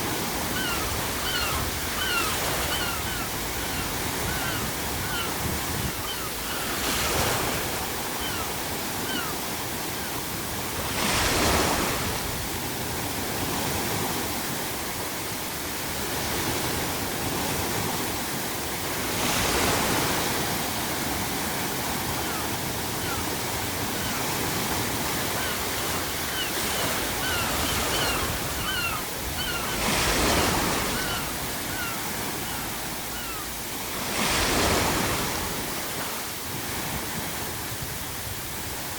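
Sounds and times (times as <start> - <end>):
ocean waves breaking: 0.0 - 38.9
seagulls crying: 0.2 - 10.2, 22.0 - 35.2.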